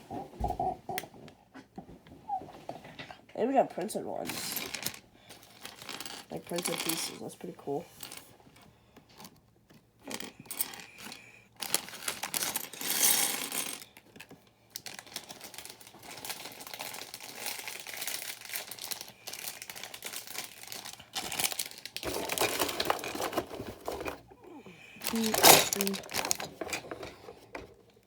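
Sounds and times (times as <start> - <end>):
plastic bags crinkling: 4.3 - 7.3, 10.1 - 24.3, 24.9 - 27.7
plastic pieces clicking together: 25.0 - 27.1.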